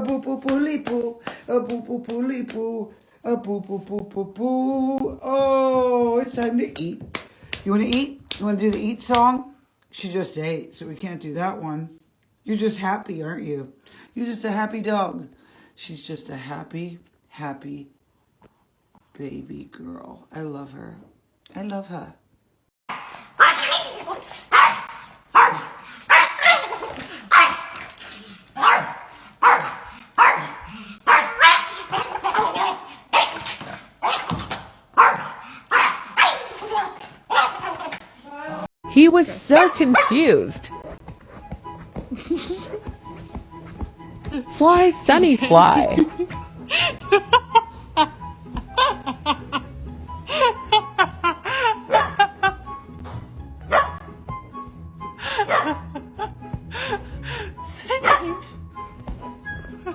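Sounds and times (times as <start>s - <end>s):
dog barking: 22.9s - 27.9s, 28.6s - 34.4s, 35.0s - 38.0s, 39.6s - 40.2s, 51.9s - 52.3s, 53.7s - 54.0s, 55.4s - 55.8s, 58.0s - 58.4s
background music: 38.3s - 59.9s.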